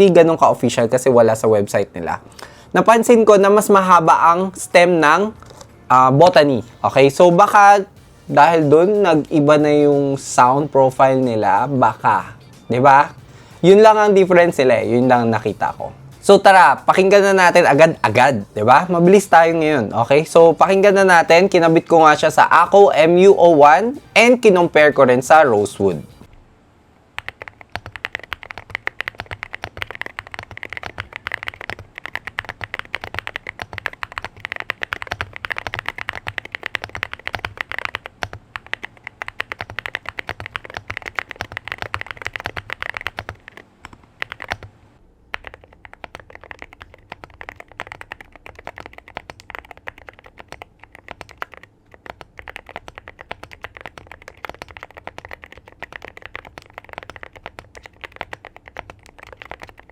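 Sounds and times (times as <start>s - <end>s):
fast typing on mechanical keyboard: 16.9s - 23.4s, 27.2s - 44.7s, 45.3s - 59.9s.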